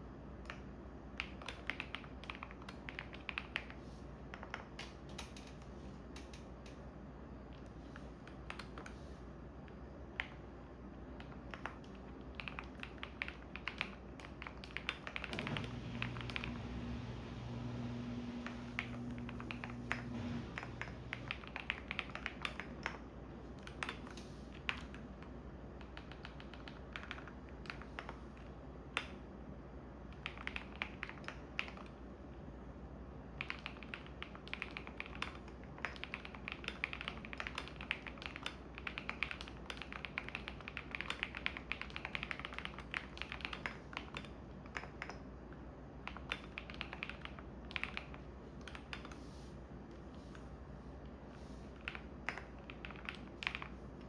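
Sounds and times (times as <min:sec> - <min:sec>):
computer keyboard typing: 0:00.4 - 0:06.8, 0:07.5 - 0:09.0, 0:09.6 - 0:29.2, 0:30.1 - 0:32.0, 0:33.3 - 0:45.2, 0:46.0 - 0:49.4, 0:51.4 - 0:54.0
washing machine humming: 0:14.0 - 0:25.8.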